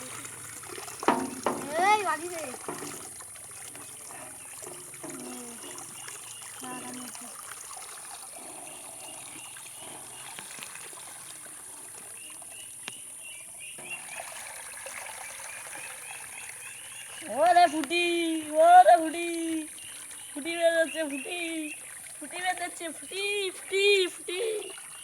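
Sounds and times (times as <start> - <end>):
water trickling: 0.0 - 25.0
faint voices: 3.9 - 6.0.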